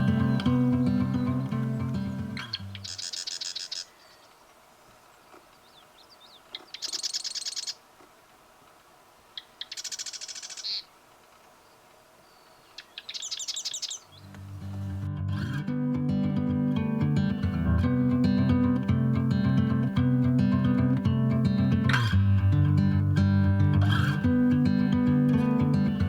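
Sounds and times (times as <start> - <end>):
acoustic guitar music: 0.0 - 3.0, 14.2 - 26.0
bird call notes: 0.0 - 4.4, 5.6 - 7.8, 11.6 - 14.3
songbird trilling: 0.0 - 4.4, 5.5 - 7.8, 9.4 - 10.9, 11.6 - 14.3.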